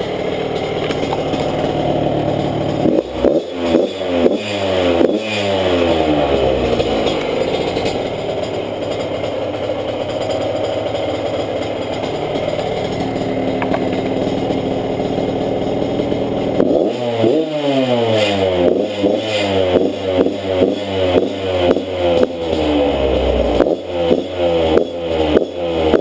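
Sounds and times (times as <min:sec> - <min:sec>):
two-stroke engine idling and revving: 0:00.0 - 0:26.0.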